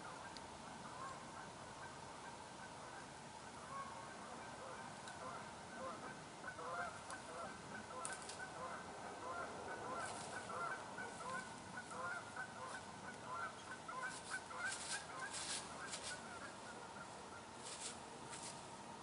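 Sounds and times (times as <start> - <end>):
geese honking: 0.0 - 17.8
brief rustling: 14.1 - 16.3, 17.6 - 18.6.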